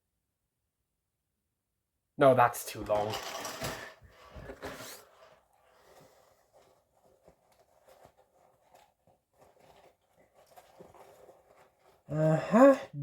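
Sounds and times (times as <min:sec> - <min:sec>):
soft clicks and rustles: 0:02.8 - 0:12.1.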